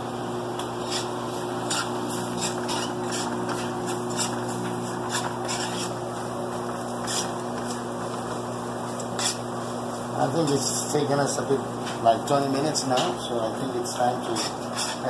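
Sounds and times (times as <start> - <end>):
constant mechanical hum: 0.0 - 15.0
spices sizzling in oil: 0.4 - 11.0, 14.0 - 15.0.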